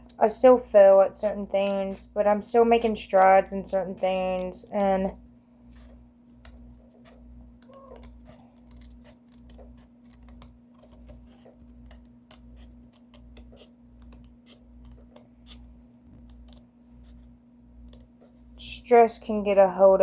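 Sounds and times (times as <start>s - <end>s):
steady low hum: 0.0s - 20.0s
hands tapping cardboard: 5.7s - 18.6s.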